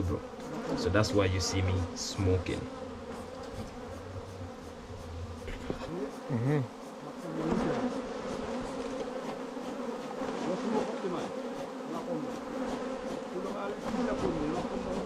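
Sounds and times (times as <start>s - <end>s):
bees buzzing: 0.0s - 15.0s
single bee passing close: 0.0s - 15.0s.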